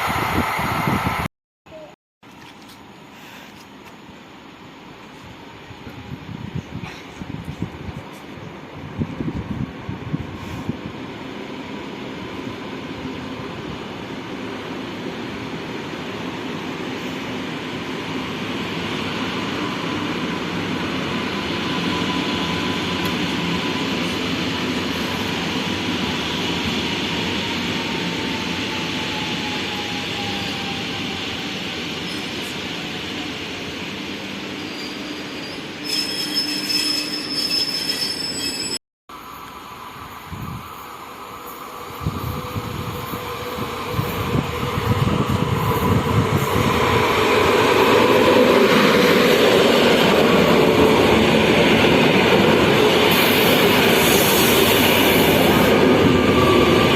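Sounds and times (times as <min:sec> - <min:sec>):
train rumbling: 0:03.2 - 0:56.9
high wheel squeal: 0:34.6 - 0:38.8.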